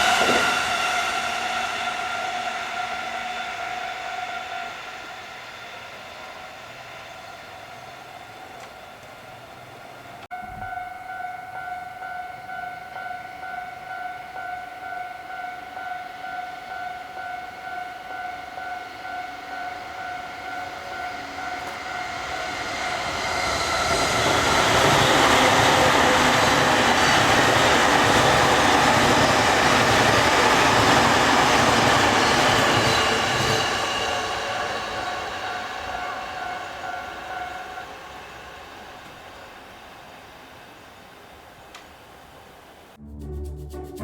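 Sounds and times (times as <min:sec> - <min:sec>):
train rumble and wheel clatter: 0:00.0 - 0:42.7
level crossing warning bell: 0:07.2 - 0:23.4, 0:24.8 - 0:39.8.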